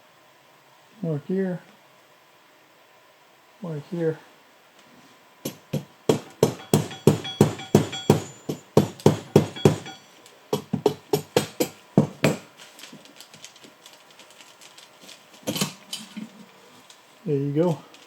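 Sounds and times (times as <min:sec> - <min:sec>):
hammer blows on metal: 0:05.5 - 0:12.4.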